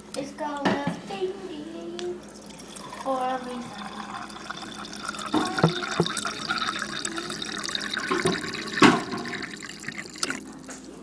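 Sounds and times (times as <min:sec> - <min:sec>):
wet chewing: 0:07.5 - 0:10.8.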